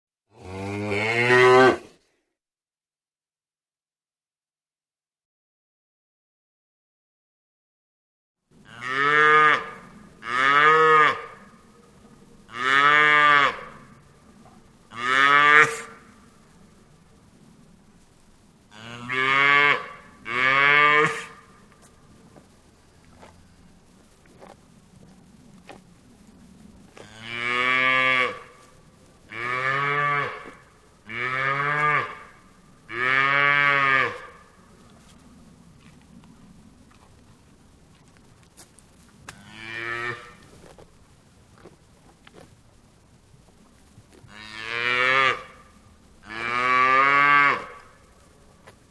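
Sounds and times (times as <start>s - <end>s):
cow mooing: 0.4s - 1.9s, 8.7s - 11.5s, 12.5s - 14.0s, 14.9s - 16.1s, 18.7s - 21.4s, 27.0s - 28.6s, 29.3s - 34.5s, 46.2s - 48.0s.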